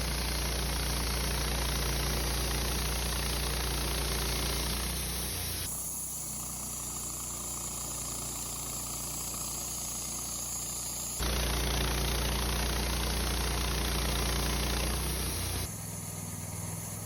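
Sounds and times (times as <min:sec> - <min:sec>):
sawmill engine running: 0:00.0 - 0:17.0.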